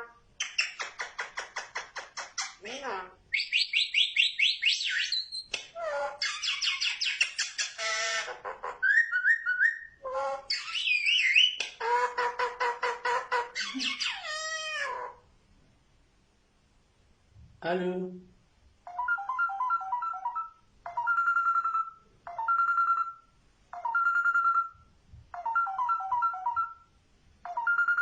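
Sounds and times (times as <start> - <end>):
myna bird mimicking ringtones: 2.0 - 15.2, 18.9 - 28.0.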